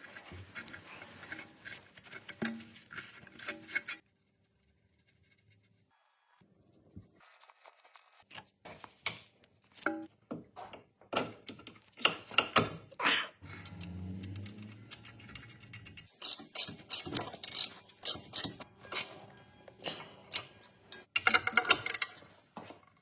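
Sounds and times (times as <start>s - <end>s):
hand tools clicking and knocking on metal: 13.6s - 19.2s, 19.9s - 22.4s.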